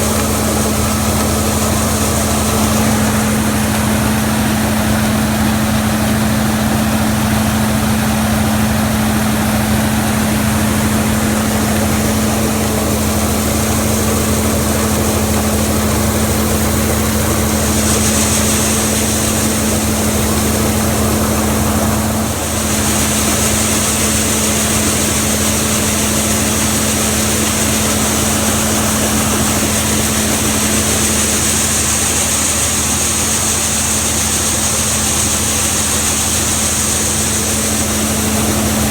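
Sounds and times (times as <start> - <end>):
diesel engine rumbling: 0.0 - 38.9.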